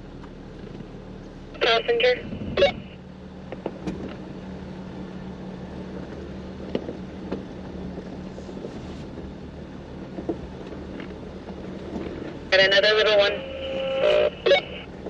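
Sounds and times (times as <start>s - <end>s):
engine running at low speed: 0.0s - 15.0s.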